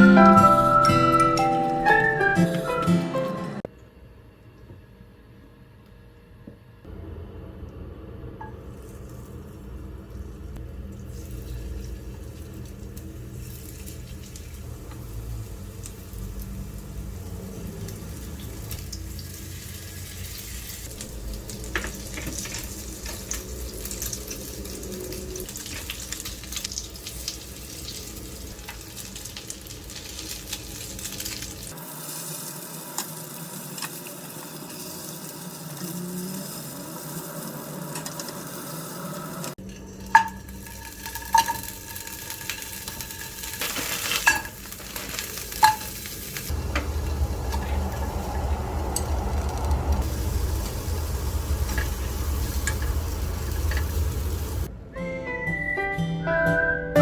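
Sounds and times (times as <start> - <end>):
steady cooking hiss: 8.6 - 54.7
low rumble: 12.0 - 26.4, 46.3 - 55.0.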